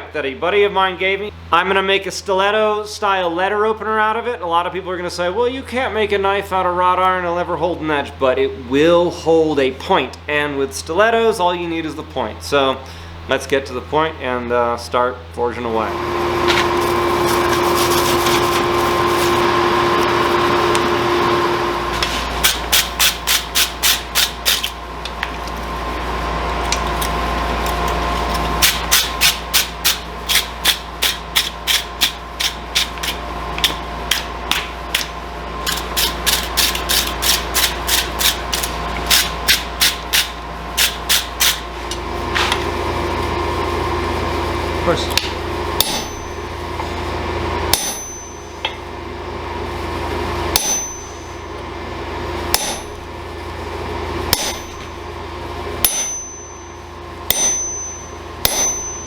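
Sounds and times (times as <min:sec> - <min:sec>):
hammer striking iron on anvil: 0:45.2 - 0:46.5, 0:47.7 - 0:48.8, 0:50.5 - 0:51.6, 0:52.5 - 0:53.1, 0:54.3 - 0:55.0, 0:55.8 - 0:59.0.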